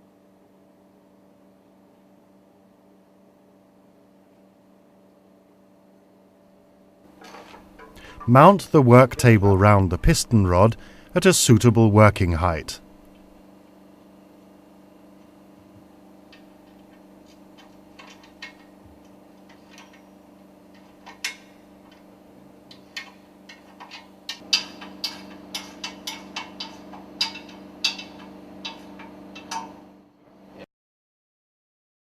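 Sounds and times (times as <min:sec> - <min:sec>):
machinery hum: 0:06.5 - 0:30.6.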